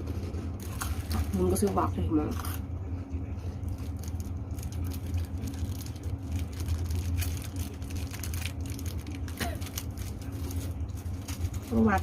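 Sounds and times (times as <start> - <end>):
steady low hum: 0.0 - 12.0
crackers crunching in mouth: 0.6 - 1.3, 3.6 - 11.7.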